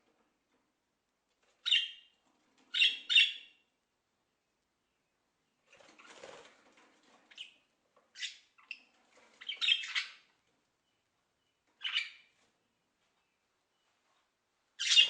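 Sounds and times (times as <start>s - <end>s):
parrot squawking: 14.8s - 15.0s.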